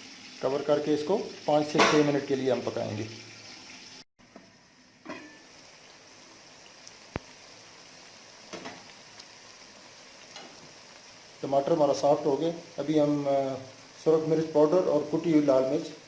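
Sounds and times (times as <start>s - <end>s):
vegetables sizzling in oil: 0.0s - 16.0s.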